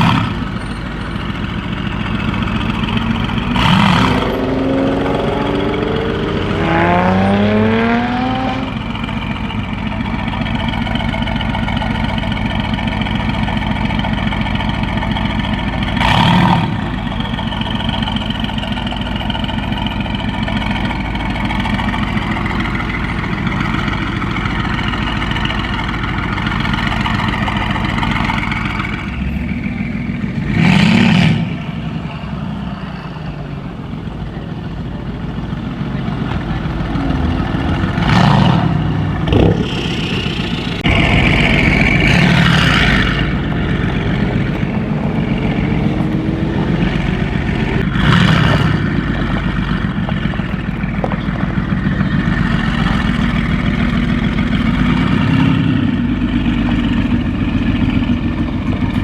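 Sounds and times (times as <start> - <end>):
car engine revving: 0.0 - 59.0
sharp exhaust crack: 30.4 - 55.1.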